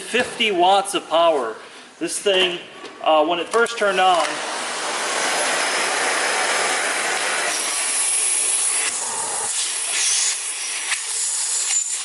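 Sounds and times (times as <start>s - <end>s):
vacuum cleaner running: 4.2s - 12.0s.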